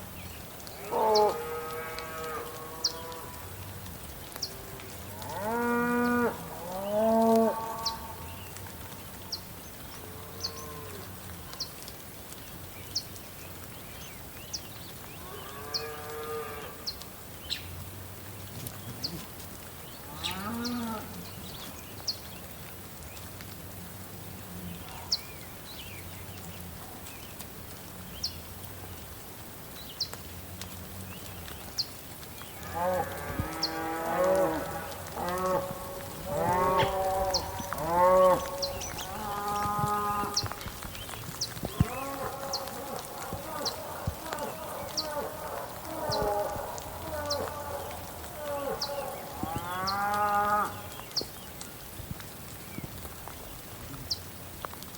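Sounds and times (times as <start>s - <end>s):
soft rain: 0.0s - 54.9s
cattle mooing: 32.7s - 40.5s, 41.7s - 50.7s.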